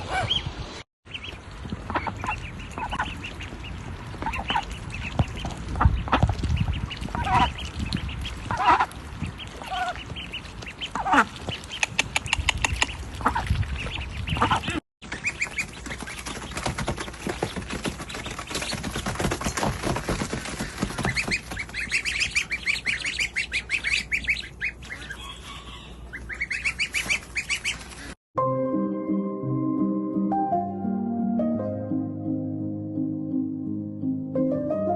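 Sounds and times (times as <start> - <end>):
birds calling harshly: 1.1 - 19.8, 20.4 - 28.2.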